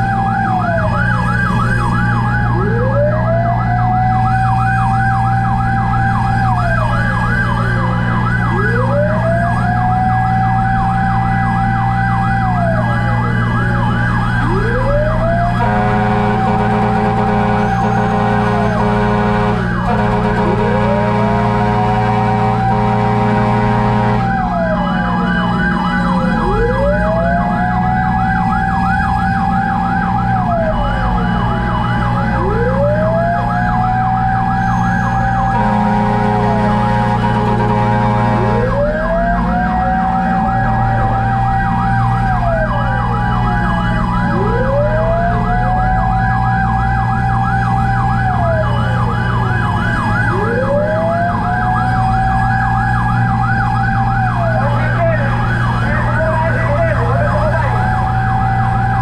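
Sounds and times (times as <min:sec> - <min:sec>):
fast siren yelp: 0:00.0 - 0:59.0
fire truck engine running: 0:00.0 - 0:59.0
fire truck siren wail: 0:00.0 - 0:59.0
long horn blast: 0:15.5 - 0:24.6, 0:34.6 - 0:39.2.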